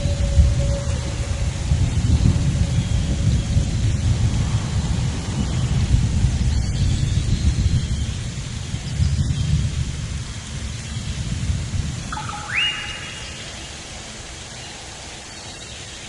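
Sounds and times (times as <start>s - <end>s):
gusty wind rumble: 0.0s - 16.0s
steady outdoor hiss: 0.0s - 16.0s
whistled note: 12.1s - 13.4s.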